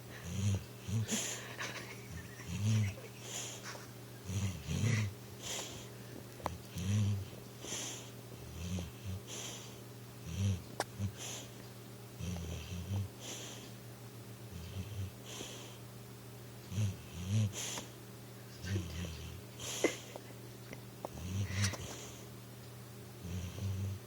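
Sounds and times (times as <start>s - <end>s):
dog snoring: 0.1s - 3.6s, 4.2s - 11.6s, 12.2s - 13.7s, 14.5s - 15.8s, 16.7s - 18.0s, 18.6s - 20.1s, 21.0s - 22.2s, 23.2s - 24.0s.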